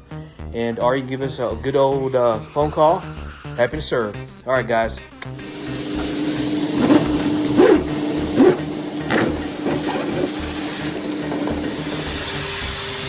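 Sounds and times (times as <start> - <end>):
duct cleaning machine humming: 5.3 - 13.0.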